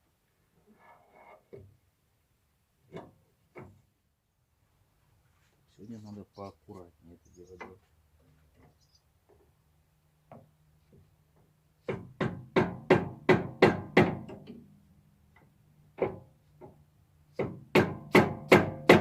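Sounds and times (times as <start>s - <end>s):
sharp knocks on engine cover: 11.9s - 14.4s, 17.4s - 19.0s.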